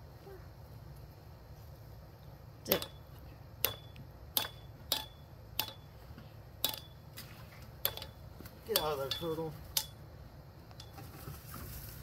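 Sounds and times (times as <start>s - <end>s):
sharp metallic knocks: 2.7s - 6.0s, 6.6s - 7.0s, 7.8s - 10.0s.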